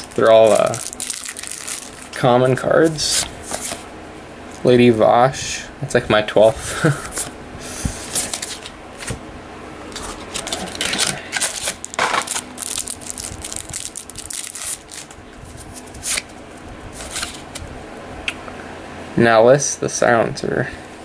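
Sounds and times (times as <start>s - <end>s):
cards flicking and rustling: 2.9s - 3.9s, 7.1s - 9.2s, 9.9s - 16.3s, 17.0s - 17.6s.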